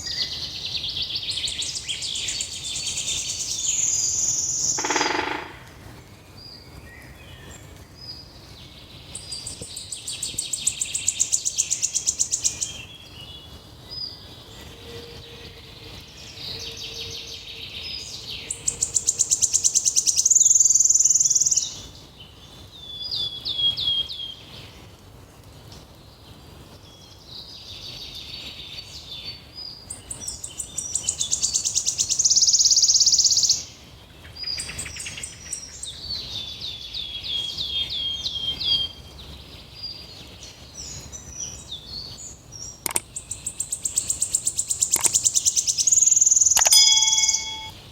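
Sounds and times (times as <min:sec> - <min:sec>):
songbird trilling and chirping: 0:00.0 - 0:05.7, 0:41.3 - 0:47.8.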